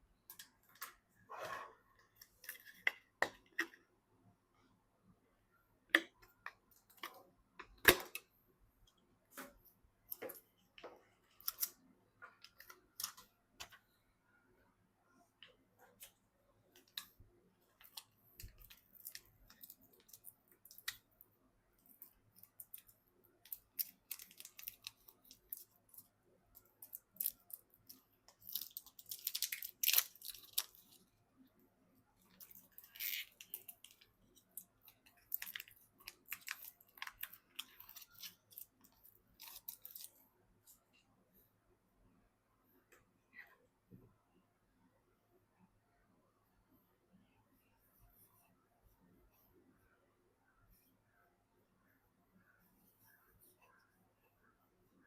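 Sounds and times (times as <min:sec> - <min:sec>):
crinkly plastic rustling: 0:21.8 - 0:31.1.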